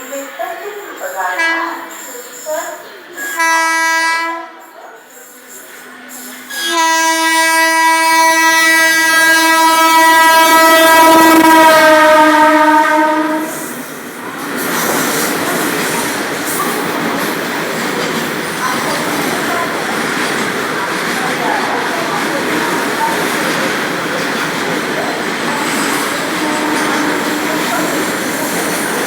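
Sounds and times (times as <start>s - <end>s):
locomotive horn blast: 3.2s - 4.6s, 6.5s - 13.7s, 25.6s - 28.2s.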